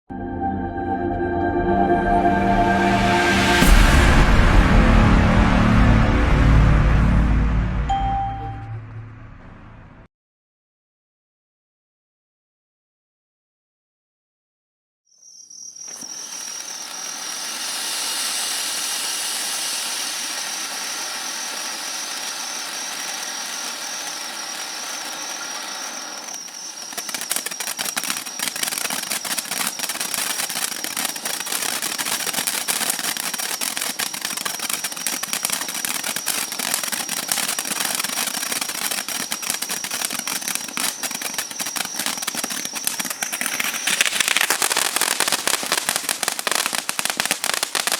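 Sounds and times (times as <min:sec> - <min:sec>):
high-pitched whine: 0:00.1 - 0:09.8, 0:15.9 - 0:29.9
firework fountain hissing: 0:15.8 - 0:47.9
rapid firework crackling: 0:15.8 - 0:47.9.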